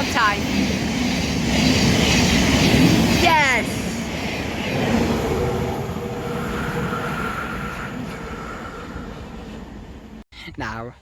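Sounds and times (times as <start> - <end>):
electric train rumble: 0.0 - 10.2.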